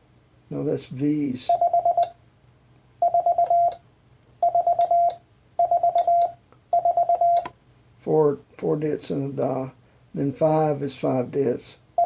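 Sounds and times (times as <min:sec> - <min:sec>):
morse code beeps: 0:01.5 - 0:02.2, 0:03.0 - 0:03.8, 0:04.4 - 0:07.5.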